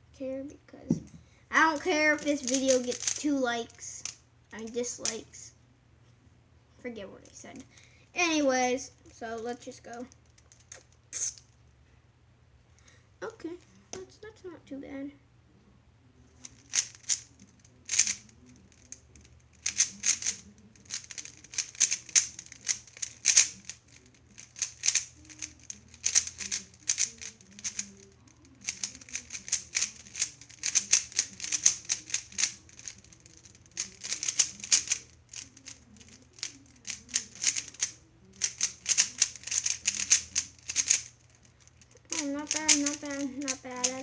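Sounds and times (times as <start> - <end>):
plastic puzzle cube clicking: 2.2 - 3.4, 16.4 - 44.0.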